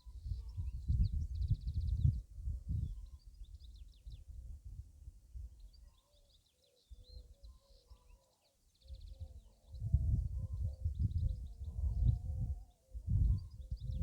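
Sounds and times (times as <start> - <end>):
wind buffeting microphone: 0.2 - 5.6, 8.9 - 14.0.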